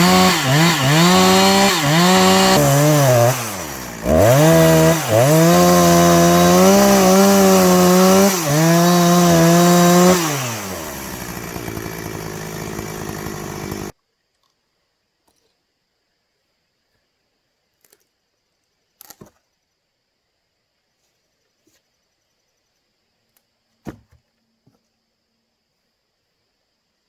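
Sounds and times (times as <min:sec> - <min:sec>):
chainsaw cutting a log: 0:00.0 - 0:13.9.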